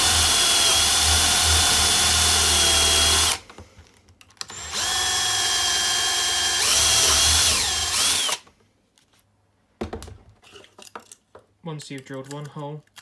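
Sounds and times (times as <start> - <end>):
electric drill boring a hole: 0.0 - 3.4, 4.5 - 8.4.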